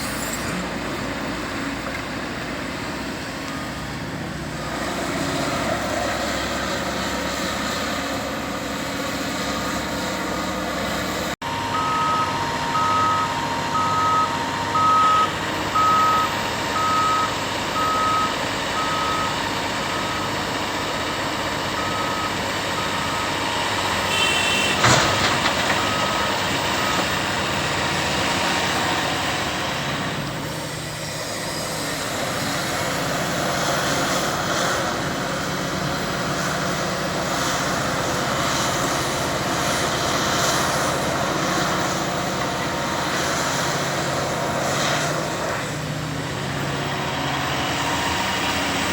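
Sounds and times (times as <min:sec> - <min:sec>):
heavy machinery running: 0:00.0 - 0:48.9
back-up alarm beeping: 0:11.4 - 0:20.5, 0:21.7 - 0:24.6.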